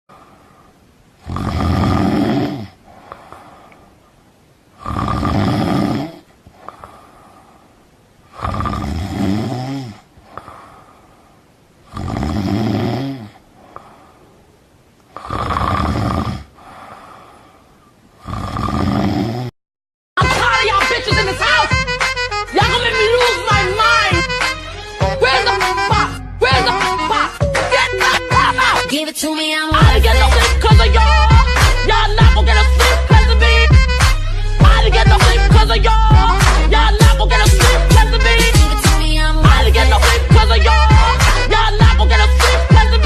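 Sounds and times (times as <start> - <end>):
soft breathing: 0.1 - 1.0, 2.6 - 5.0, 6.1 - 8.5, 9.5 - 12.0, 13.1 - 15.4, 16.4 - 18.5
person snoring loudly: 1.2 - 3.4, 4.8 - 7.1, 8.3 - 10.8, 11.8 - 14.0, 15.1 - 17.1, 18.2 - 19.5, 29.7 - 43.0
music: 20.2 - 43.0.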